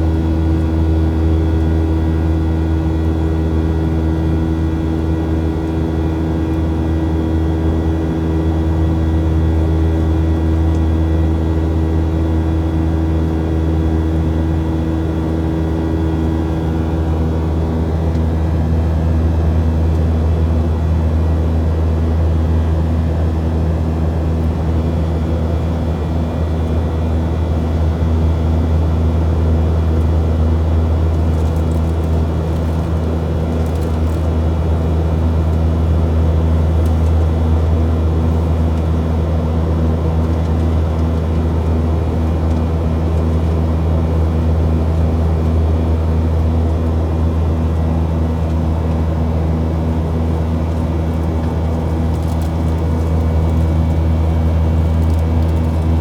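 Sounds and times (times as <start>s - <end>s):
aircraft engine drone in cabin: 0.0s - 56.0s.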